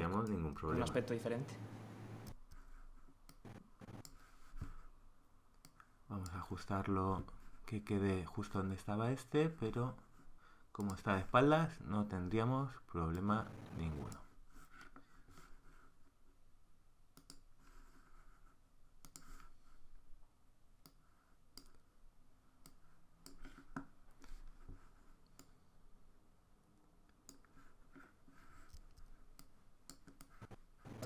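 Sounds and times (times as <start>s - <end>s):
computer mouse clicks: 0.1s - 1.2s, 1.8s - 4.8s, 5.5s - 6.5s, 10.8s - 11.1s, 13.1s - 14.3s, 17.1s - 17.6s, 19.0s - 19.6s, 20.8s - 21.9s, 22.6s - 24.4s, 25.2s - 25.6s, 27.1s - 27.6s, 28.6s - 31.0s.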